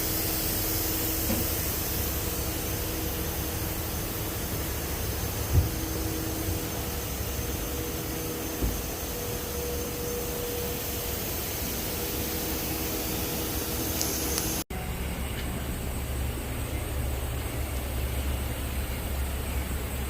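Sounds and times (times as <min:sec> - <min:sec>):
compressed air hiss: 0:00.0 - 0:14.6
faint motor hum: 0:00.0 - 0:20.0.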